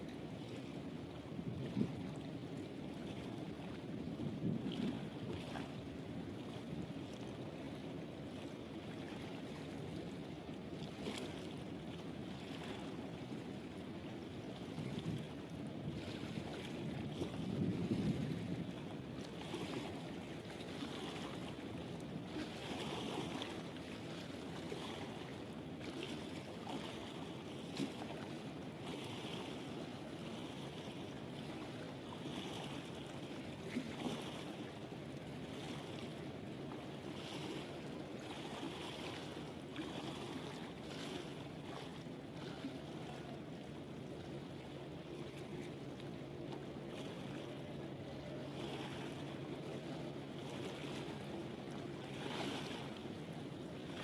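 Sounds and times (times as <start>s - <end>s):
wind noise on microphone: 1.4s - 2.1s, 3.9s - 5.6s, 14.7s - 18.9s
ship engine hum: 4.7s - 33.7s, 34.4s - 54.0s.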